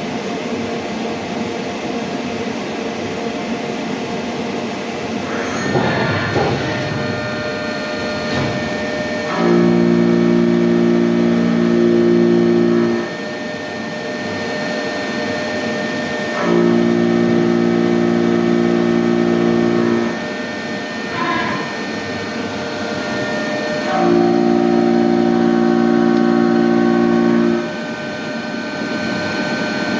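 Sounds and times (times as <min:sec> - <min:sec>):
lathe humming and whining: 0:05.1 - 0:29.9
loud low hum: 0:05.2 - 0:13.2.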